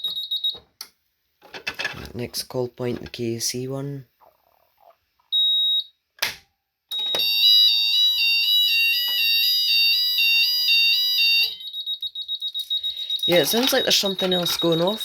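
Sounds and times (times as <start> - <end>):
fire alarm sounders: 0.0 - 0.6, 6.9 - 15.0
high electronic beep: 12.0 - 15.0.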